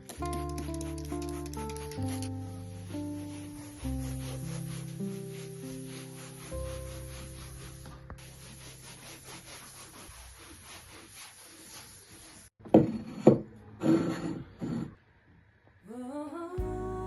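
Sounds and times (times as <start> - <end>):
scrubbing on hard surface: 0.1 - 12.5.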